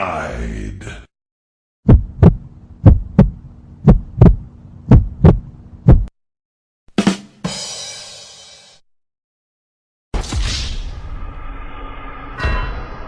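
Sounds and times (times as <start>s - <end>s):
heartbeat thumps: 1.8s - 6.1s
low hum: 1.9s - 6.1s
bright crash: 10.2s - 13.0s
sharp hit: 10.2s - 13.0s.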